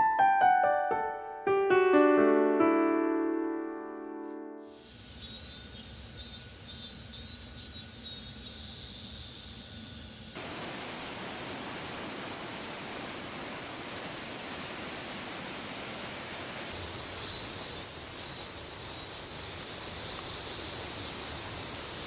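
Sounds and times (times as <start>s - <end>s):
high insect trilling: 4.7s - 10.3s
waterfall rushing: 10.4s - 17.2s.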